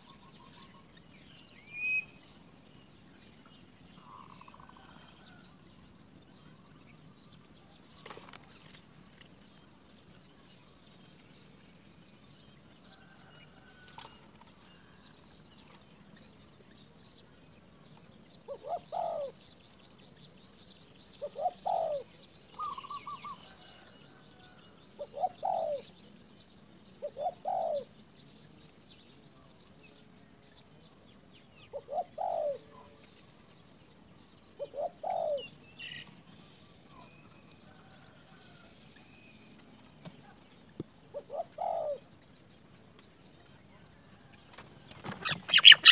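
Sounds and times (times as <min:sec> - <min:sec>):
bird calling: 0:18.5 - 0:19.4, 0:21.2 - 0:23.8, 0:31.7 - 0:32.9, 0:45.0 - 0:45.9.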